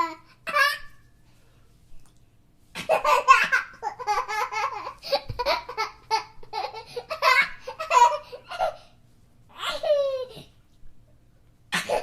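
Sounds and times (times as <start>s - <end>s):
baby laughing: 2.8s - 8.8s.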